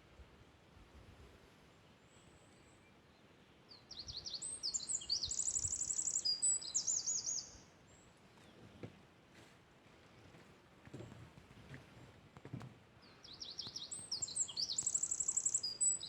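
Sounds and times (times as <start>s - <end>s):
songbirds trilling and chirping: 3.8s - 8.8s, 13.0s - 16.0s.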